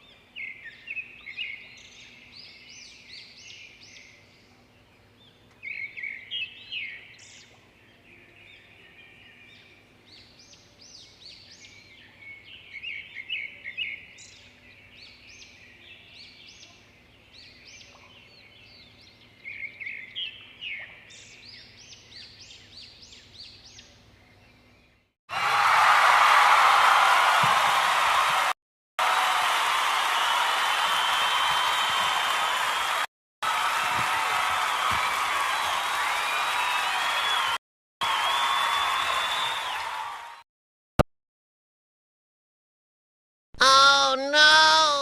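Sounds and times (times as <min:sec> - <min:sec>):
small songbirds chirping: 0:00.0 - 0:25.1.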